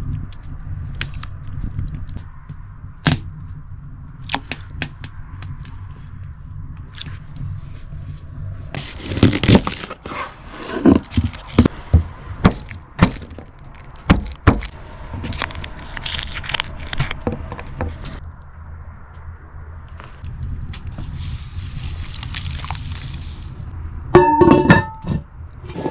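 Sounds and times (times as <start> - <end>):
low steady rumble: 0.0 - 25.9
sharp cracks and knocks: 0.1 - 3.4, 4.2 - 5.8, 10.8 - 19.3
rough scraping: 6.9 - 18.2, 24.2 - 25.9.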